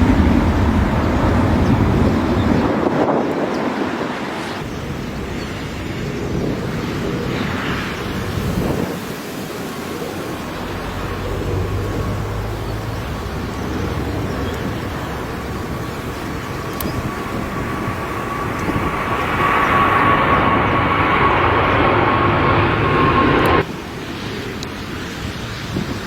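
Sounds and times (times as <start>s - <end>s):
airliner engines rumble and whine: 0.0s - 26.0s
wind: 0.0s - 26.0s
rain: 8.2s - 19.2s, 23.6s - 26.0s.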